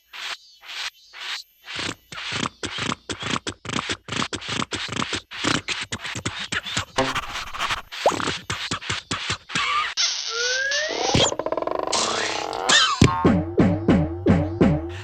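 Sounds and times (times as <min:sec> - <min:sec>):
rapid cartoon scratching strokes: 0:04.1 - 0:09.4
quick rising squeak: 0:07.0 - 0:08.2.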